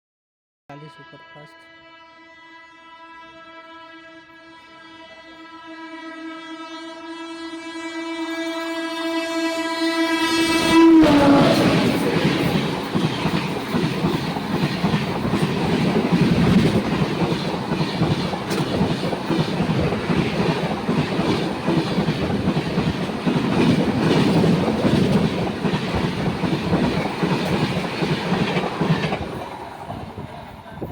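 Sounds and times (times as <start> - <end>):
locomotive horn blast: 0.7 - 13.1
train wheels clattering: 11.0 - 30.9.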